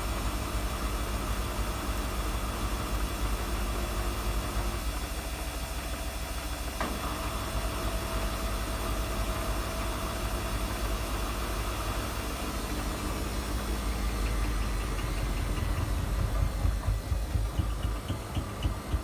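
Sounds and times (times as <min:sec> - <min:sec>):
washing machine humming: 0:00.0 - 0:19.0
washing machine squeaking: 0:12.9 - 0:19.0.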